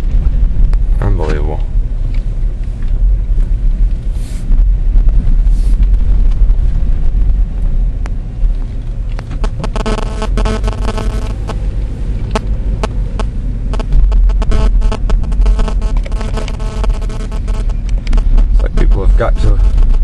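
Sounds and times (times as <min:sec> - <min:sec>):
car driving rumble: 0:00.0 - 0:20.0
pitched buzzing with clicks: 0:09.2 - 0:20.0.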